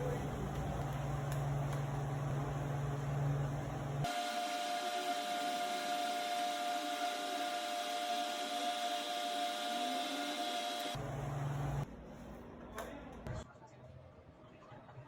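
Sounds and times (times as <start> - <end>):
small electric motor whining: 4.0 - 11.6.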